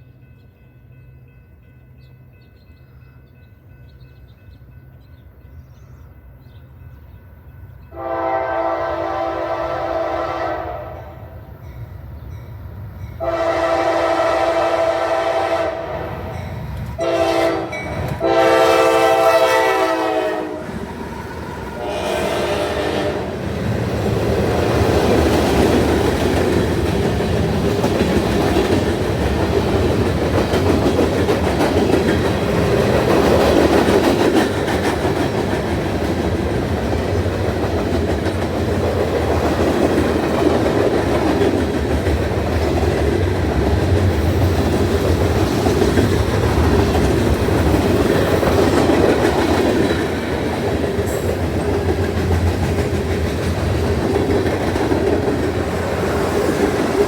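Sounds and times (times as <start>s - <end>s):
freight train wheels rolling: 11.4s - 57.0s.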